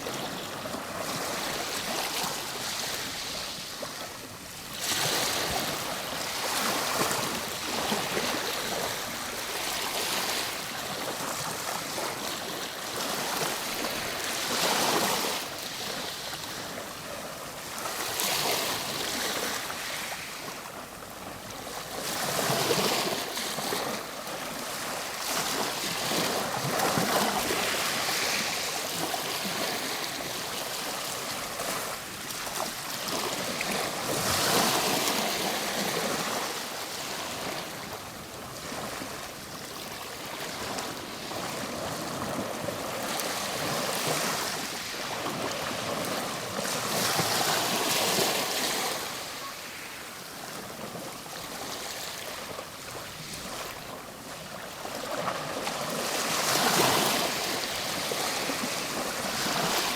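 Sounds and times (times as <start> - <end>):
ocean waves washing on shore: 0.0 - 59.9.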